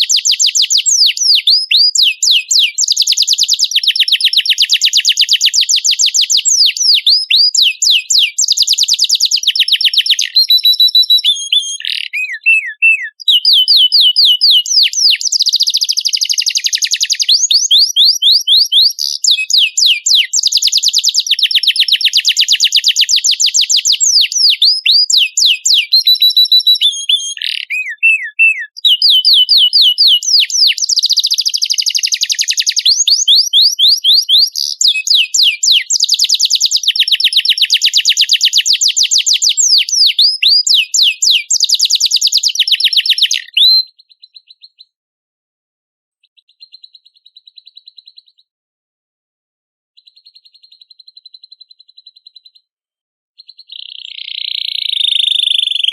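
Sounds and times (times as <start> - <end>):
buzzy bird chirping: 0.0 - 45.0, 46.2 - 48.5, 50.0 - 52.7, 53.4 - 55.9
songbird singing in fast trills: 0.0 - 45.0, 46.2 - 48.5, 50.0 - 52.7, 53.4 - 55.9.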